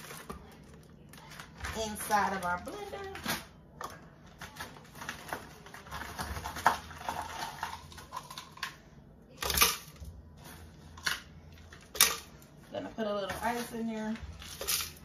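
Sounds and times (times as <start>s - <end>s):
frozen fruit clattering into blender: 0.0s - 8.8s, 13.3s - 15.0s.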